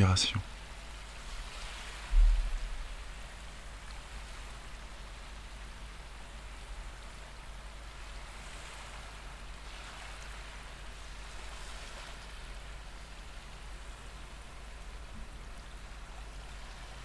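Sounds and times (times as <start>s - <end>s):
ocean waves on shore: 0.0s - 17.0s.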